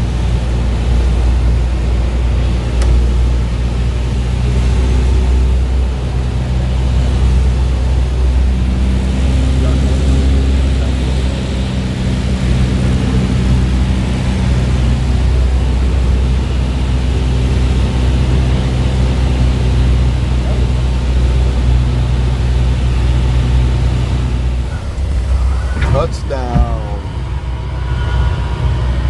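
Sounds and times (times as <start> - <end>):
vehicle engine humming: 0.0 - 29.0
rushing noise: 23.8 - 29.0.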